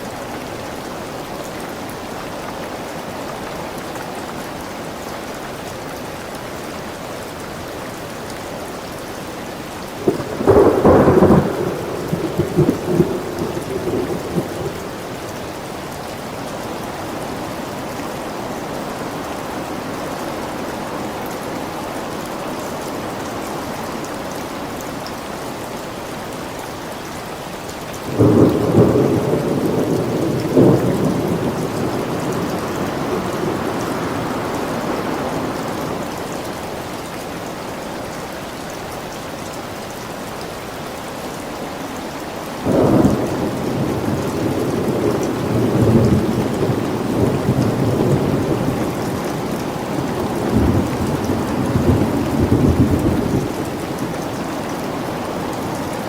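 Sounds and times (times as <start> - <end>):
steady rain: 0.0 - 56.0
thunder rolling: 10.0 - 14.9, 28.1 - 34.6.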